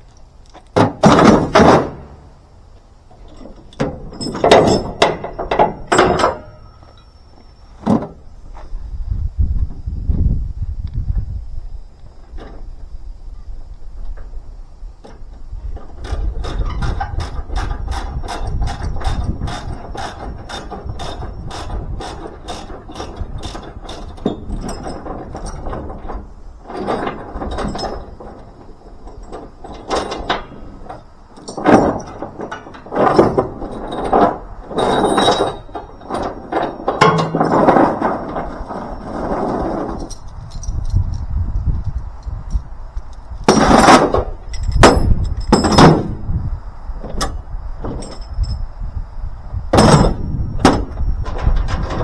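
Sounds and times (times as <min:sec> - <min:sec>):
loud irregular clunking noises: 0:00.5 - 0:02.5, 0:03.1 - 0:07.1, 0:15.0 - 0:41.0, 0:43.4 - 0:46.3, 0:47.0 - 0:48.6, 0:49.7 - 0:52.0.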